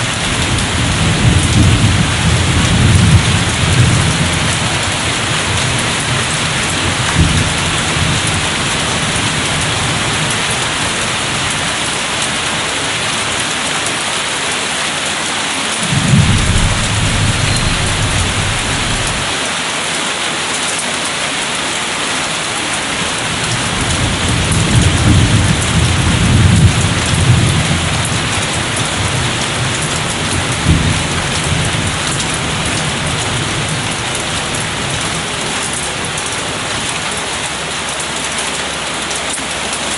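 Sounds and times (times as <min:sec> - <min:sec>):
rain on hard surfaces: 0:00.0 - 0:39.9
distant thunder rumbling: 0:00.2 - 0:10.9, 0:15.8 - 0:19.3.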